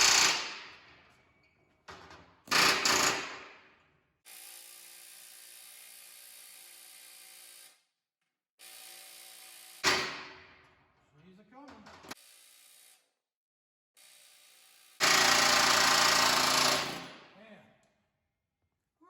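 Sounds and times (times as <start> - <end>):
pneumatic air hammer burst: 2.5 - 3.6, 8.7 - 10.5.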